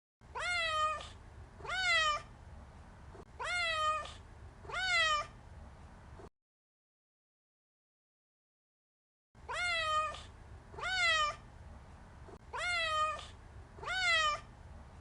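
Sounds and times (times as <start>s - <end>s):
cat meowing: 0.3s - 2.3s, 3.4s - 5.4s, 9.5s - 11.4s, 12.5s - 14.5s.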